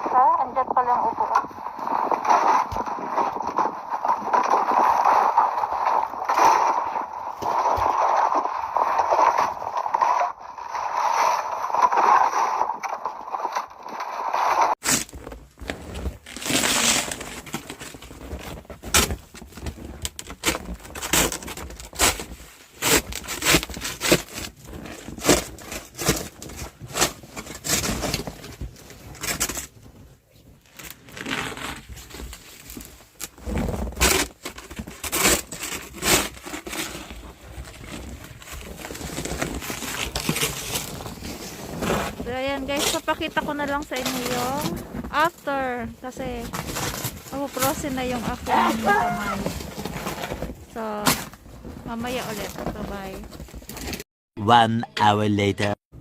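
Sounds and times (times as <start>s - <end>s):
hand tool scraping snow: 33.4s - 53.1s.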